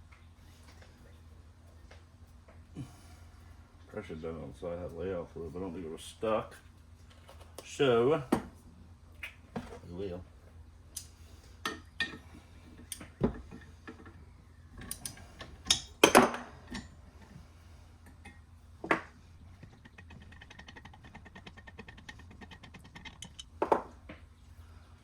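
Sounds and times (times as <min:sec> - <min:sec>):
low steady hum: 0:00.0 - 0:25.0
faint rapid ticking: 0:19.3 - 0:23.6
steel parts clinking and knocking: 0:19.4 - 0:23.9.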